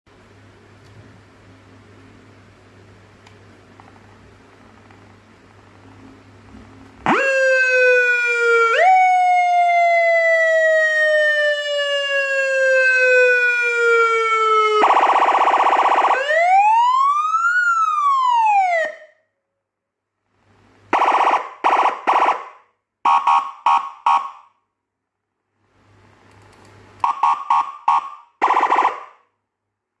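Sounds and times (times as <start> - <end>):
police siren wailing: 7.0 - 19.2, 20.9 - 24.5, 27.0 - 29.2.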